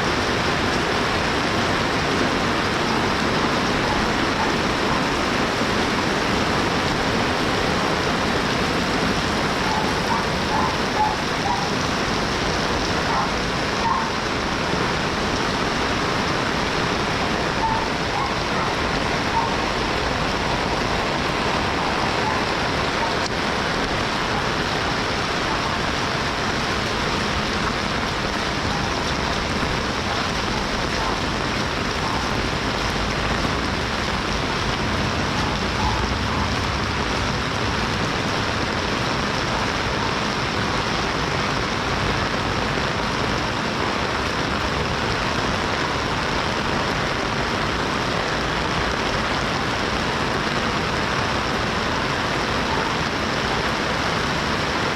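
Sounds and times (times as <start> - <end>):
steady rain pattering: 0.0 - 54.9
low rumble: 32.4 - 38.6.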